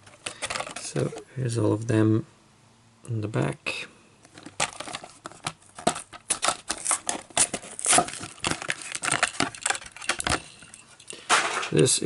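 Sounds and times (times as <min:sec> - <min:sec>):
plastic packaging crinkling: 0:00.0 - 0:01.2, 0:04.3 - 0:11.8.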